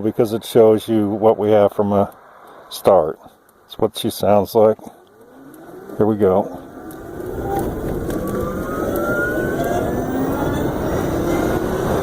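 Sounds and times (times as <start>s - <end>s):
wind and road noise: 0.0s - 12.0s
electric motor whine rising: 5.0s - 12.0s.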